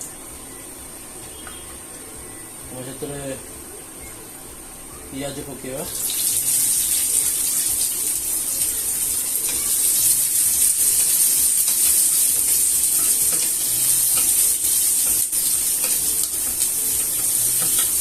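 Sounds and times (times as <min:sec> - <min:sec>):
onions sizzling in hot oil: 0:05.2 - 0:18.0.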